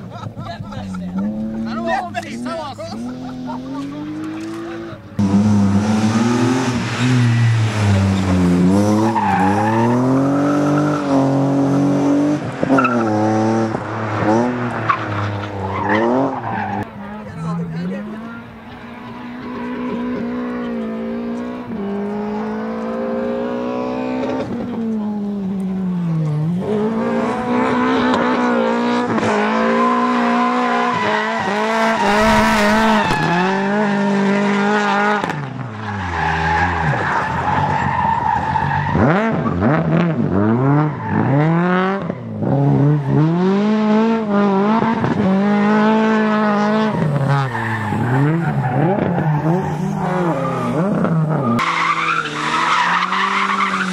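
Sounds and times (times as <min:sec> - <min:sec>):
rally car engine revving: 0:00.0 - 0:53.9.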